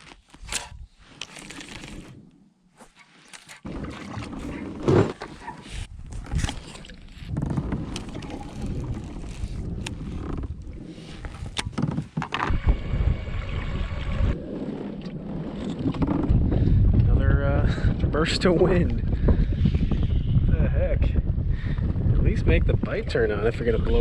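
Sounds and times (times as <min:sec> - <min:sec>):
wind buffeting microphone: 0:05.6 - 0:24.0.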